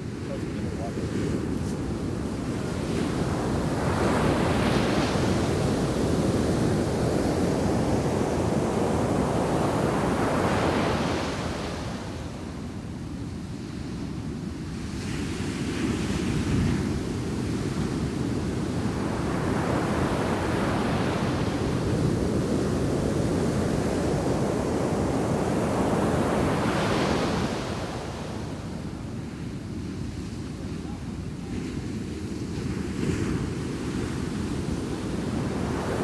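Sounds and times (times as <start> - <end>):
ocean waves crashing on beach: 0.0 - 12.6, 18.7 - 29.0, 30.6 - 36.0.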